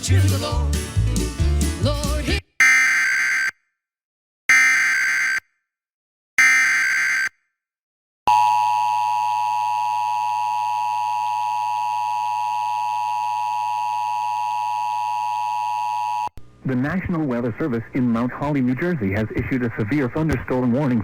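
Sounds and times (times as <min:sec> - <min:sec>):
harsh digital data tones: 0:02.6 - 0:03.5, 0:04.5 - 0:05.4, 0:06.4 - 0:07.3.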